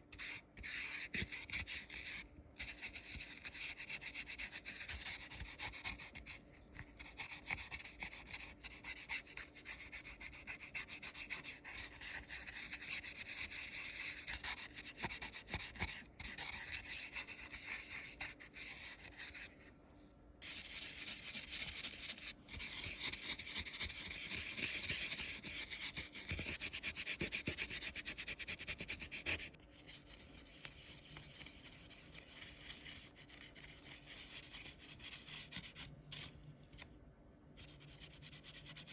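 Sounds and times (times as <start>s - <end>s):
scratchy rubbing on foil and paper: 20.4s - 36.9s.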